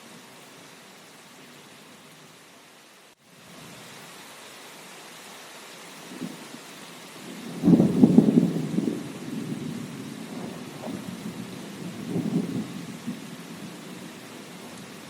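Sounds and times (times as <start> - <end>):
rain hiss: 0.0 - 15.0
thunder rumble: 7.2 - 15.0.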